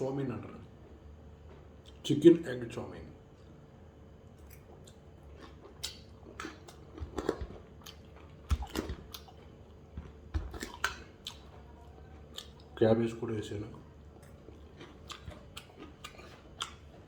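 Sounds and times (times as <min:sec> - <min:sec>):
person chewing noodles: 0:04.2 - 0:12.8, 0:13.6 - 0:17.0.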